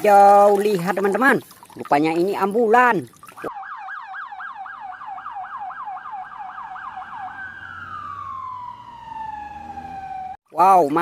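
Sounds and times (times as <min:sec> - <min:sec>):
electronic ambulance siren: 0:03.5 - 0:10.4.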